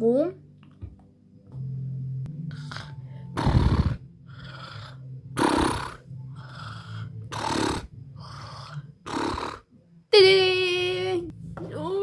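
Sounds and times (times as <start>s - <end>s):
loud snoring: 2.5s - 9.7s.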